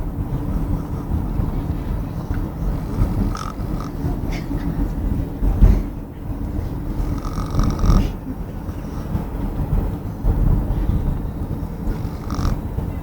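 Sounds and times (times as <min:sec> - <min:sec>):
man snoring: 0:00.9 - 0:04.3, 0:06.6 - 0:09.1, 0:11.4 - 0:12.7.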